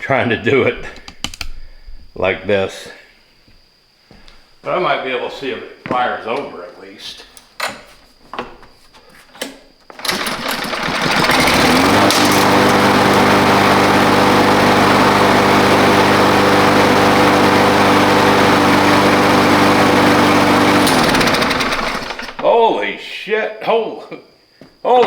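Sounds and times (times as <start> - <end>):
lawn mower engine starting and running: 9.9 - 22.8.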